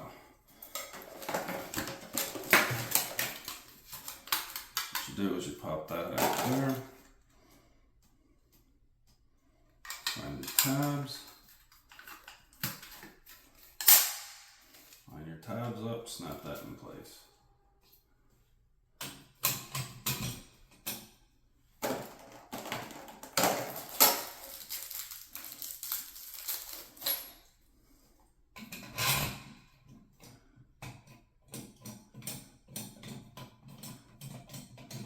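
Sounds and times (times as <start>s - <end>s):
plastic parts clicking and rustling: 0.6s - 7.2s, 9.8s - 15.0s, 21.8s - 27.5s.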